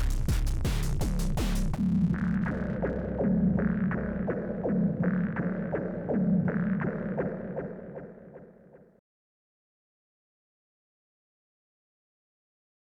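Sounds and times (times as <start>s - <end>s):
heavy kick drum: 0.0s - 2.8s
throbbing low synth note: 0.0s - 7.9s.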